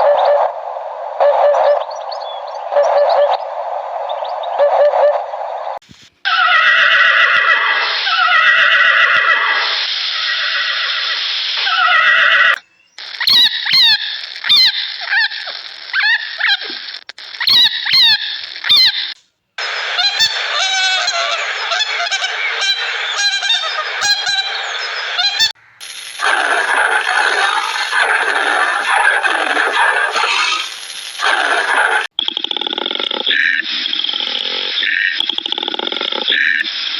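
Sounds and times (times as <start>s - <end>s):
geese honking: 19.9s - 25.5s, 26.2s - 32.1s.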